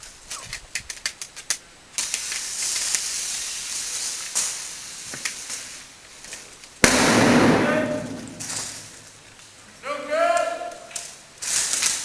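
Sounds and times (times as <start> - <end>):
loud hiss: 6.8 - 9.2.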